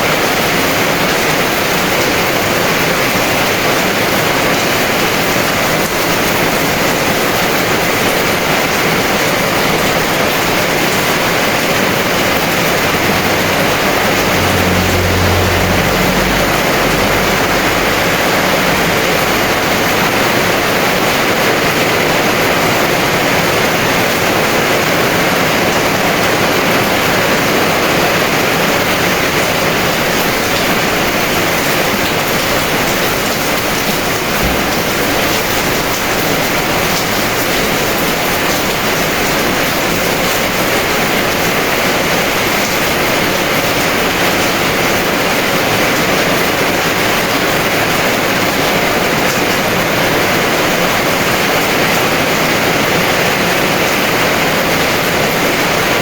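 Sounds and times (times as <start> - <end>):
heavy rain pouring: 0.0 - 56.0
low rumble: 10.9 - 21.2, 34.3 - 36.2.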